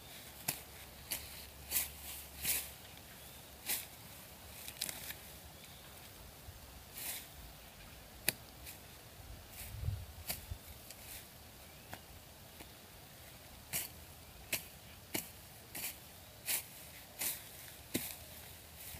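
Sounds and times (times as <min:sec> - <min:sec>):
irregular rustles and scrapes: 0:09.5 - 0:11.3.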